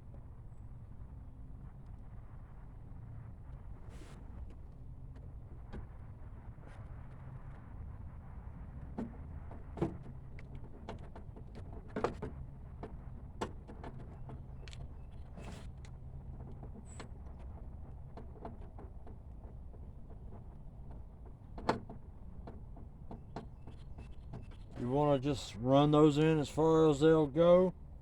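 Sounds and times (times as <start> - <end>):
low hum: 0.0 - 21.5
clicks and light knocks: 9.8 - 24.8.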